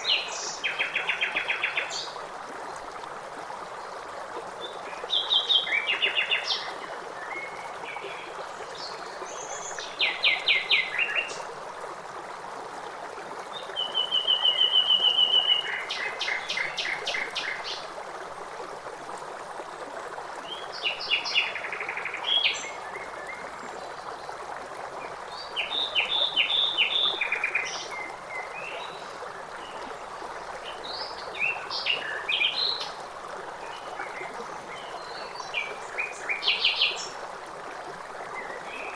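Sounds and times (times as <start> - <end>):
flowing stream: 0.0 - 38.9.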